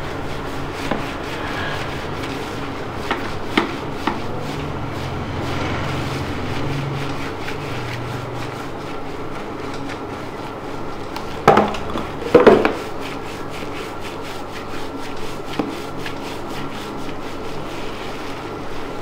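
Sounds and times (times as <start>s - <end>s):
loud hits: 0.8s - 3.8s.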